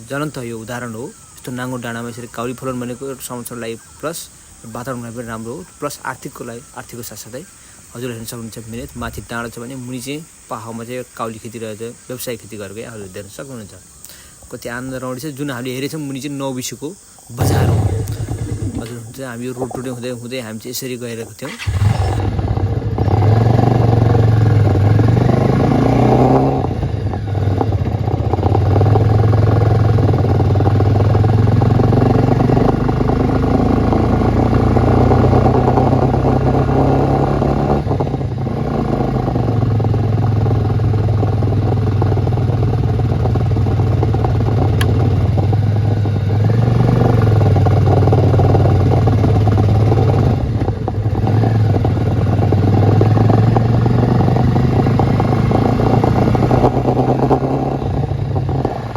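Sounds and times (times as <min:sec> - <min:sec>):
wind and road noise: 0:00.0 - 0:16.0, 0:16.9 - 0:58.9
motorcycle engine running: 0:17.3 - 0:20.0, 0:21.5 - 0:58.9.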